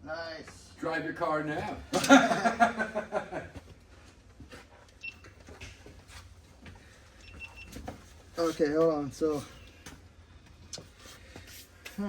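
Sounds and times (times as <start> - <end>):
man laughing: 1.9 - 3.6.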